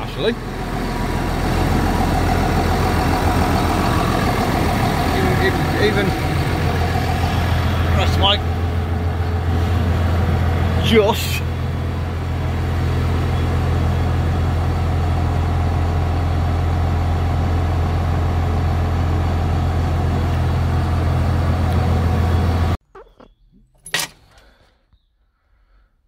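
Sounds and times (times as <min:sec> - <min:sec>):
tractor diesel engine idling: 0:00.0 - 0:22.8.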